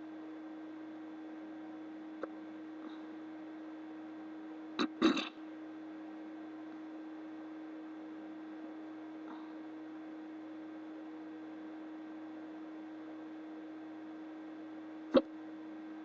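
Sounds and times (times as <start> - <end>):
person hiccuping: 4.8 - 5.4.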